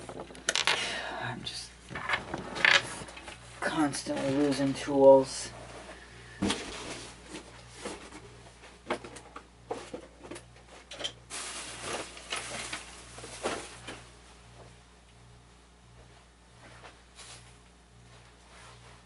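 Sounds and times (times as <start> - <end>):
rummaging through tools: 0.0 - 1.0, 1.9 - 14.0.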